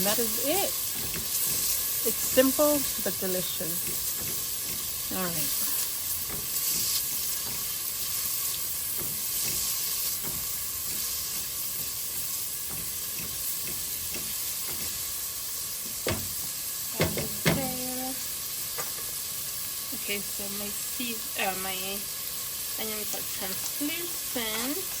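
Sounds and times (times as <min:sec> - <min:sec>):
onions sizzling in a pan: 0:00.0 - 0:25.0
stirring scrape: 0:00.7 - 0:15.2
sharp knocks: 0:16.0 - 0:16.4.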